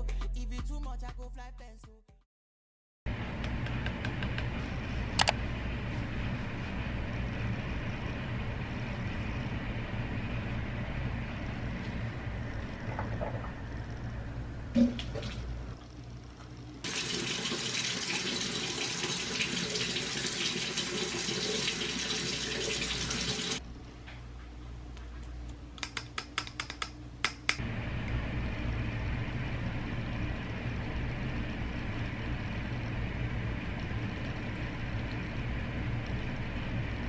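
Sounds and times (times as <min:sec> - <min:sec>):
tap water running into sink: 0:16.8 - 0:23.6.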